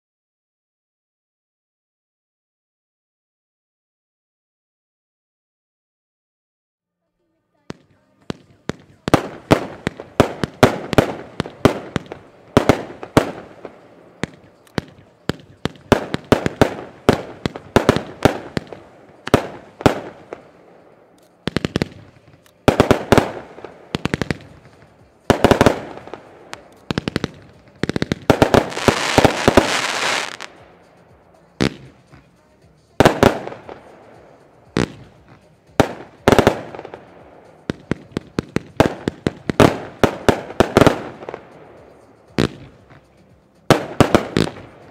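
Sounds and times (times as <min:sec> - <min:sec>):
dense crackling hiss: 0:07.6 - 0:44.9
firework cake popping: 0:21.5 - 0:30.6.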